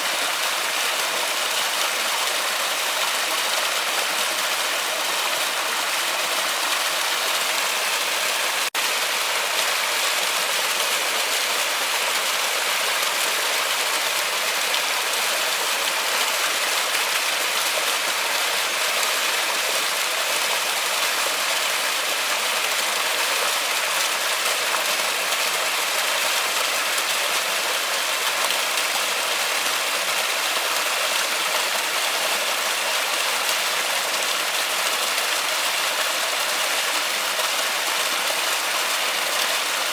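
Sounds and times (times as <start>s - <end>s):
waterfall rushing hiss: 0.0s - 24.0s.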